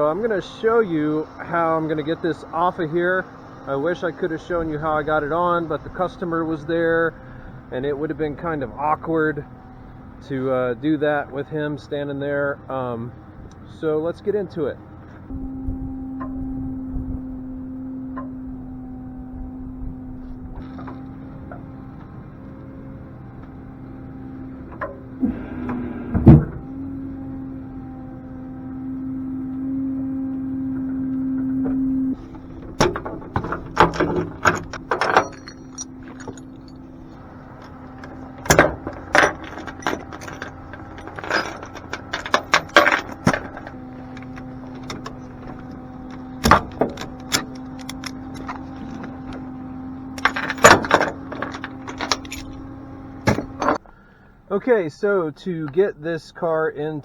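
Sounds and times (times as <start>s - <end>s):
truck engine humming: 0.0s - 54.9s
knocks clicks and rattles of work: 32.2s - 49.5s, 50.2s - 53.8s.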